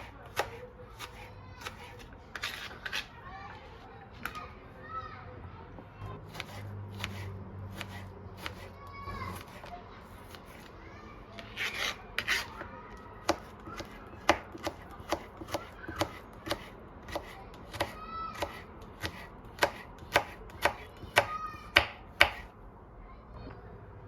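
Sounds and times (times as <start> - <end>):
knife chopping on cutting board: 0.0 - 3.0, 6.3 - 8.7, 11.6 - 22.5.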